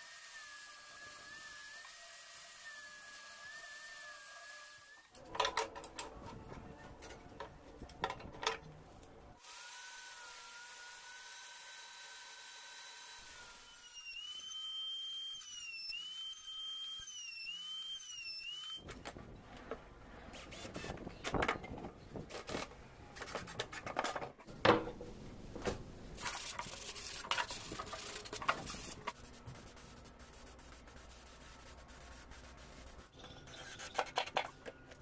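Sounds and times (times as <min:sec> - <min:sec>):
small power tool whining: 0:00.0 - 0:05.1
scraping and rubbing on wood: 0:26.2 - 0:34.9.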